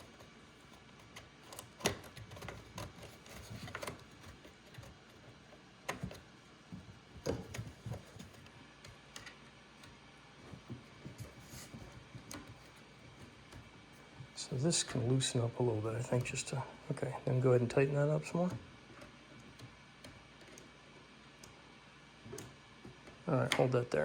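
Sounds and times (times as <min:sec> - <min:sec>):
faint clicks and knocks: 0:00.0 - 0:15.1, 0:18.4 - 0:20.8.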